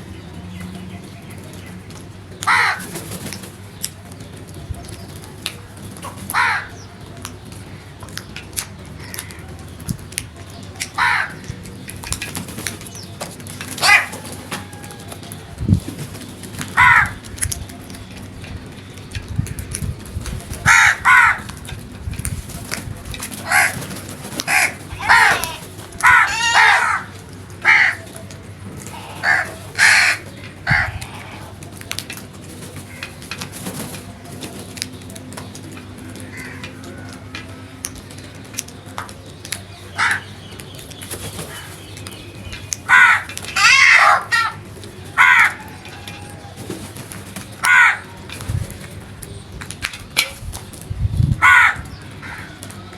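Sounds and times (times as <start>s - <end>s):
crows cawing: 2.4s - 3.0s, 6.0s - 6.9s, 9.0s - 9.5s, 10.8s - 11.6s, 13.8s - 15.2s, 16.7s - 17.4s, 20.6s - 21.6s, 23.4s - 28.2s, 28.8s - 31.7s, 36.2s - 37.5s, 39.9s - 40.4s, 42.8s - 46.6s, 47.6s - 48.4s, 51.4s - 52.9s.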